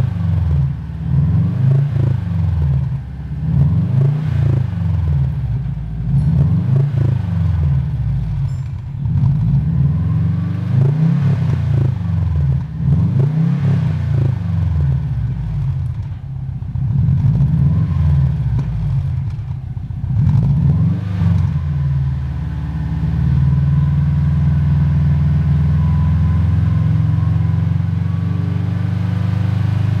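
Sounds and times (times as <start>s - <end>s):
car engine revving and idling: 0.0s - 30.0s
metallic turbocharger rattle: 4.6s - 10.1s, 14.6s - 17.7s, 18.3s - 20.6s.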